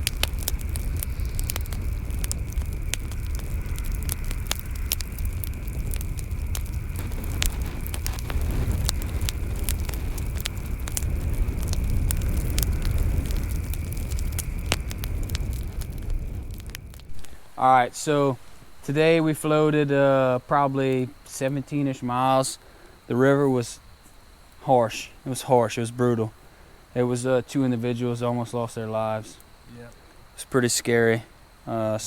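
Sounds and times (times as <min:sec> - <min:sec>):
wind rumble on microphone: 0:00.0 - 0:17.6
campfire crackling and popping: 0:00.0 - 0:32.0.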